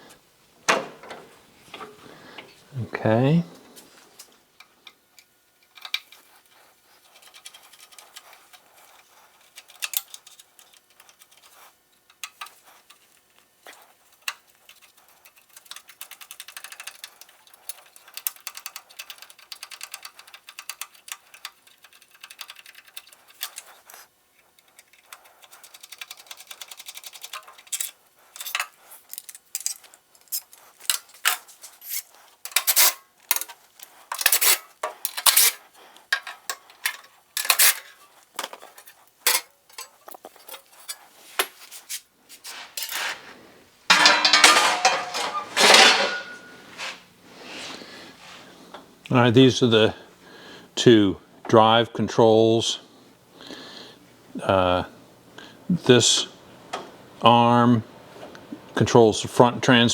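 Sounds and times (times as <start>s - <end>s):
metal parts clinking and rattling: 36.2s - 41.0s, 43.9s - 46.6s.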